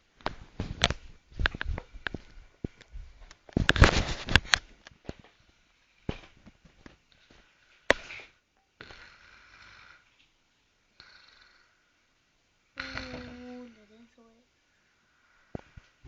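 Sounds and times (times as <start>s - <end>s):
man snoring: 8.8s - 10.1s, 11.0s - 11.8s, 12.8s - 13.9s.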